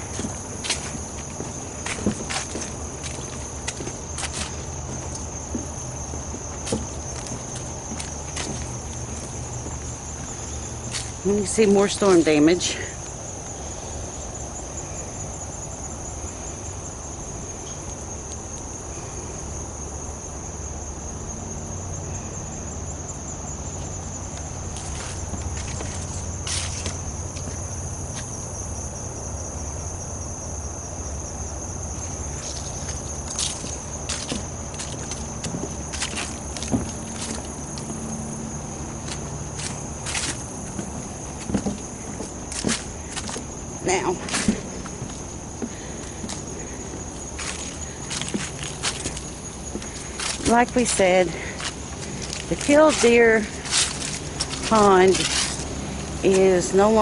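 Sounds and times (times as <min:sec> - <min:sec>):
footsteps on wooden boardwalk: 0:00.0 - 0:12.4, 0:23.8 - 0:28.4, 0:31.8 - 0:57.0
insects droning: 0:00.0 - 0:57.0.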